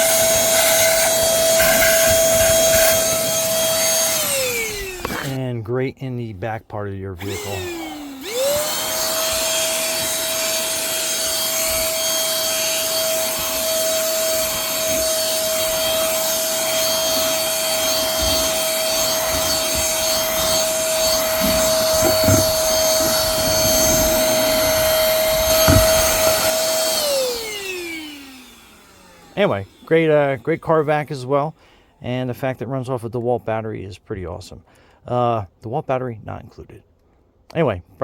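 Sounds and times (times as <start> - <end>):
motor winding down: 0.0 - 5.4, 7.2 - 31.2
handheld vacuum cleaner whining: 0.0 - 5.5, 7.2 - 31.3
short knocks: 17.1 - 26.5.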